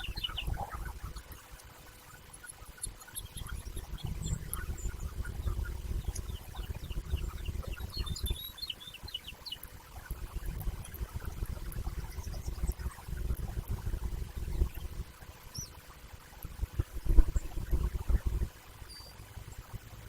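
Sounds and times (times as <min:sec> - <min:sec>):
birds twittering with high chirps: 0:00.0 - 0:15.9, 0:17.2 - 0:19.3
steady low rumble: 0:03.3 - 0:08.4, 0:10.0 - 0:15.2, 0:16.4 - 0:18.6.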